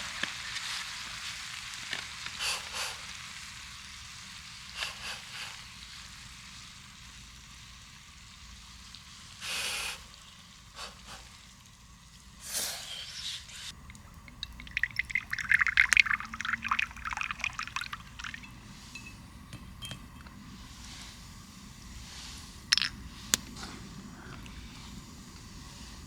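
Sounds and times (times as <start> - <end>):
food sizzling in a pan: 0.0 - 13.9
utensil scraping and clinking: 13.8 - 20.6, 22.6 - 24.6.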